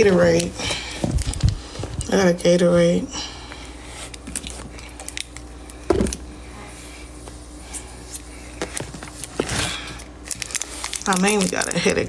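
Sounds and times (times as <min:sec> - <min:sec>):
steady low hum: 0:00.0 - 0:12.0
small clicks and handling noises: 0:04.1 - 0:06.2.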